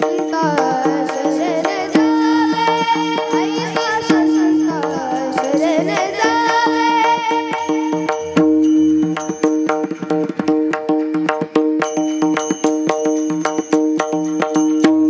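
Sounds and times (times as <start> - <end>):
person singing: 0.0 - 8.6
steady drone: 0.0 - 10.4
hand drum: 0.0 - 15.0
small hand cymbals: 0.0 - 15.0.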